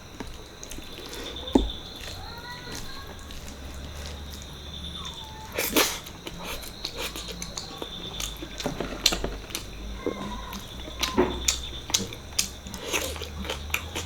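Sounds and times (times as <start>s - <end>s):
person chewing food: 0.0s - 14.0s
wet mouth clicks and smacks: 3.2s - 9.7s, 10.6s - 14.0s.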